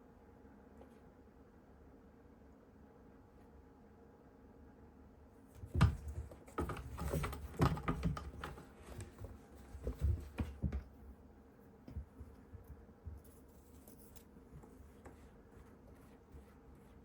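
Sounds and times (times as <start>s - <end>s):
soft knocks scuffs and rustles: 5.5s - 11.1s.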